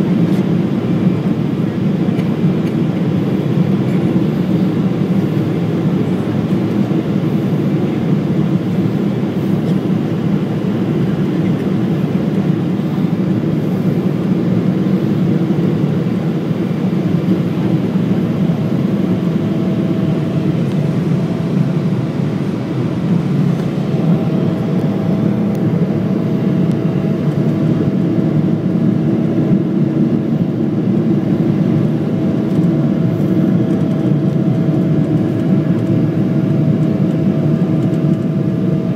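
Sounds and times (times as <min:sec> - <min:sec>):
airliner cabin engine rush: 0:00.0 - 0:38.9.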